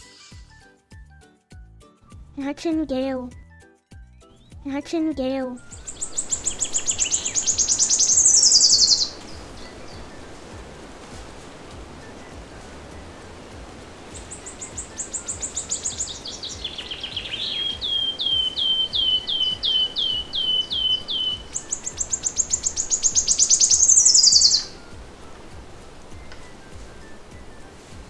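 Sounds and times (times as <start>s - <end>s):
nightingale singing: 5.6s - 28.0s.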